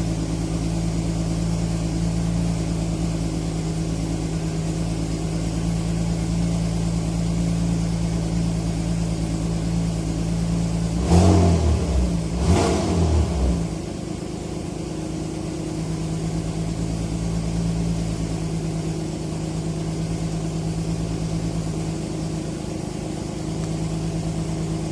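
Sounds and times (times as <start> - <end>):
car engine idling: 0.0 - 24.9
engine revving: 10.8 - 14.0.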